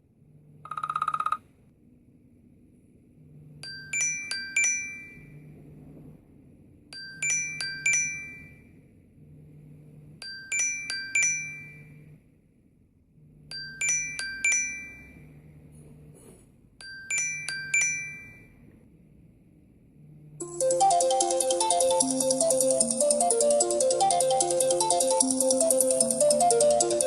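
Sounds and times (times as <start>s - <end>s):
phone ringtone chime: 7.0s - 8.7s, 10.3s - 12.0s, 13.6s - 15.2s, 16.9s - 18.6s, 20.4s - 27.0s.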